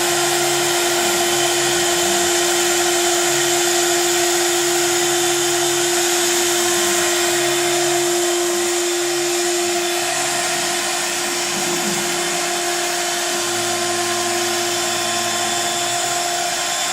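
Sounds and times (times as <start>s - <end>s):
cnc router motor whine: 0.0s - 16.9s.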